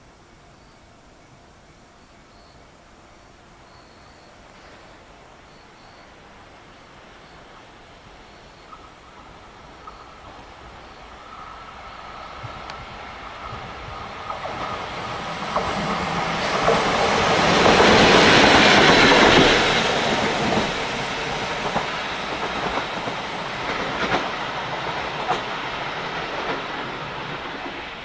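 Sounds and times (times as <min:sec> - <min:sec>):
electric locomotive passing: 0:00.0 - 0:28.0
wheels clacking over rail joints: 0:08.6 - 0:28.0.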